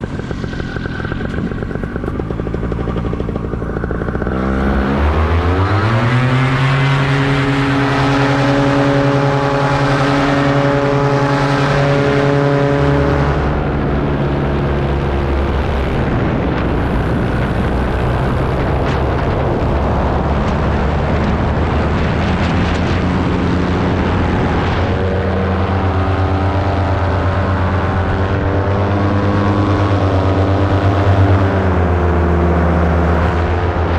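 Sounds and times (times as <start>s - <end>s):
paramotor engine and propeller: 0.0s - 33.9s.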